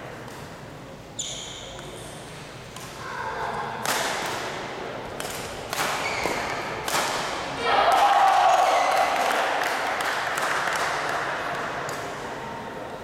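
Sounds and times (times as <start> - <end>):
shoe squeak: 1.2 - 2.2, 6.0 - 6.6
racket hitting ball: 5.1 - 7.4.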